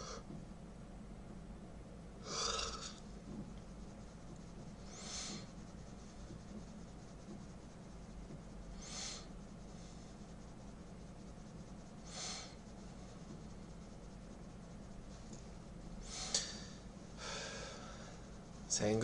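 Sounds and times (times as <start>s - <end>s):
steady low hum: 0.0s - 19.0s
person breathing: 8.8s - 10.1s, 12.0s - 12.7s, 16.0s - 18.4s.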